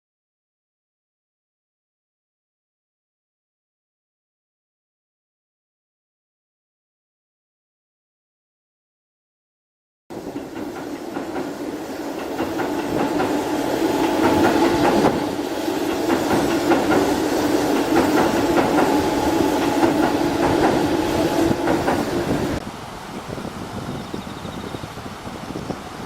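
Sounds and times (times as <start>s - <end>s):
train wheels clicking over rail joints: 10.2s - 22.6s.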